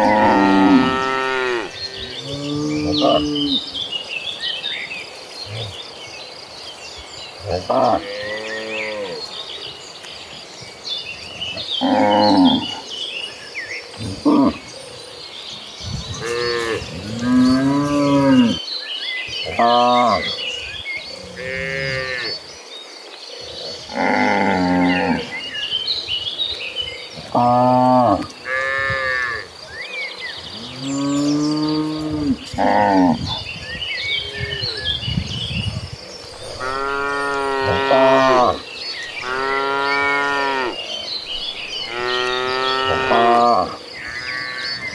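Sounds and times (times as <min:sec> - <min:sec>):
cattle mooing: 0:00.0 - 0:03.6, 0:36.5 - 0:38.6.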